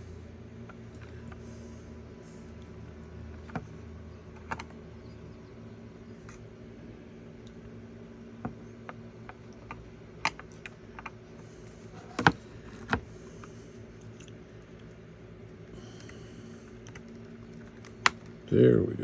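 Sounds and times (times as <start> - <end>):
steady low hum: 0.0 - 19.0
small clicks and taps: 4.4 - 4.7.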